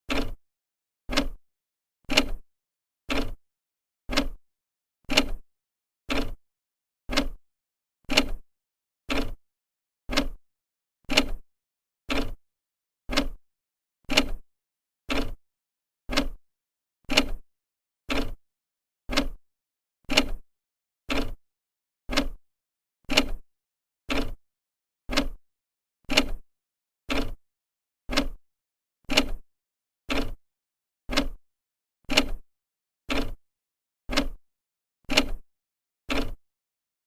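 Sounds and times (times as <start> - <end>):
clock ticking: 1.1 - 1.4, 4.1 - 4.4, 7.1 - 7.4, 10.1 - 10.4, 13.1 - 13.4, 16.1 - 16.4, 19.1 - 19.4, 22.1 - 22.4, 25.1 - 25.4, 28.1 - 28.4, 30.1 - 30.4, 31.1 - 31.4, 33.1 - 33.4, 34.1 - 34.4, 36.1 - 36.4.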